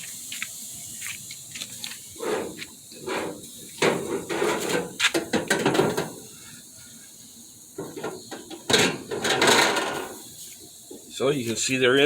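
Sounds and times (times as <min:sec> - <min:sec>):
metal racks and door rattling: 0:03.8 - 0:06.1, 0:07.9 - 0:10.1.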